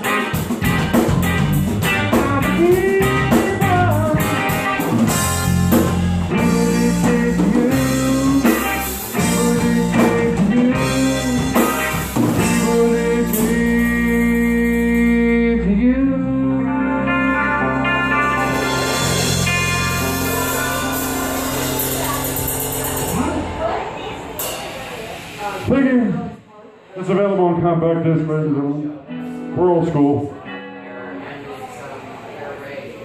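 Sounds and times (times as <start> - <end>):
blues-rock band playing: 0.0 - 26.2, 29.0 - 31.2
electric guitar bending notes: 0.0 - 26.3
cymbals: 17.6 - 26.4.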